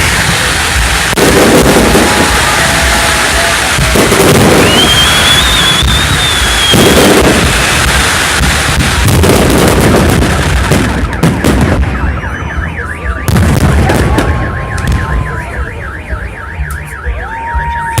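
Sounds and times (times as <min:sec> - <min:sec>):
fireworks booming: 0:00.0 - 0:16.8
car alarm warbling: 0:11.0 - 0:17.5.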